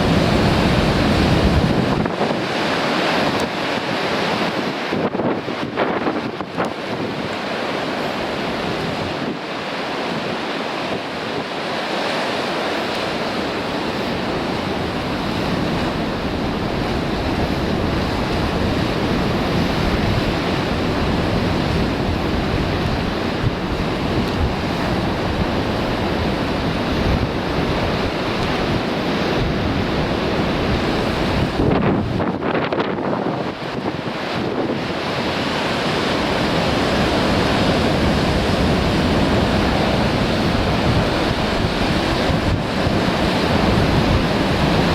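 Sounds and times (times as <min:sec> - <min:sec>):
wind buffeting microphone: 0:00.0 - 0:09.5, 0:13.1 - 0:44.9
surf crashing on rocks: 0:00.0 - 0:44.9.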